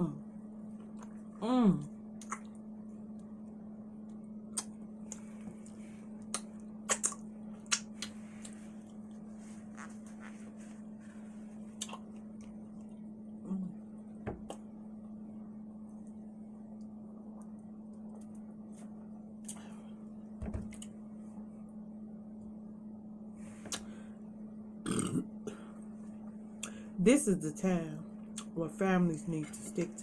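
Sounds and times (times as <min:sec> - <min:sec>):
steady low hum: 0:00.0 - 0:30.0
wet mouth clicks and smacks: 0:02.2 - 0:02.6, 0:06.2 - 0:08.2
person chewing food: 0:11.6 - 0:13.2.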